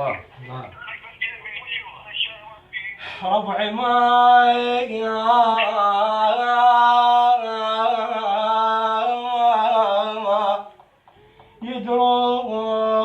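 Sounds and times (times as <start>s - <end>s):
man singing unaccompanied: 3.2s - 10.8s, 11.5s - 13.0s.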